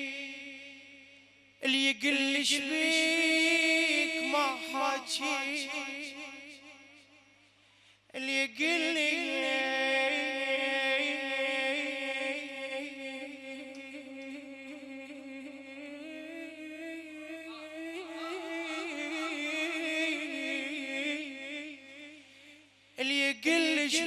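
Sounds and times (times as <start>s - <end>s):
person chanting long note: 16.8s - 20.7s.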